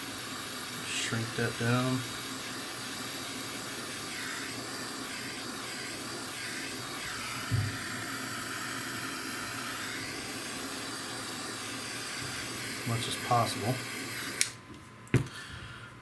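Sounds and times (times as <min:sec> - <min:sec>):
heat gun blowing hot air: 0:00.0 - 0:14.6.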